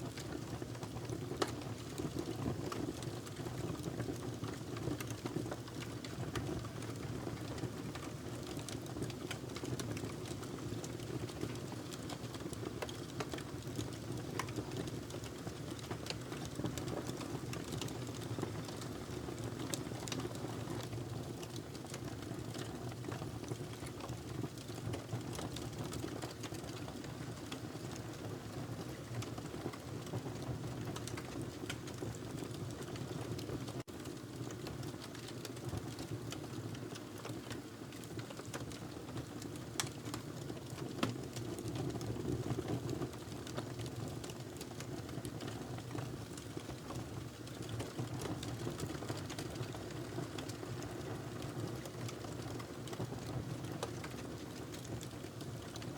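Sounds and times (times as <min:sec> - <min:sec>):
fire crackling and popping: 0:00.1 - 0:28.0, 0:28.8 - 0:55.9.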